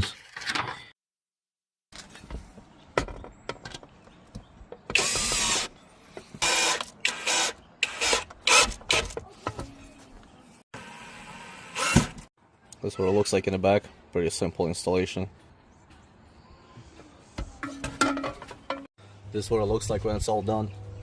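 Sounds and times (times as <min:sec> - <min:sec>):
cordless drill bursts: 0:05.0 - 0:05.7, 0:06.4 - 0:09.0, 0:10.8 - 0:12.2.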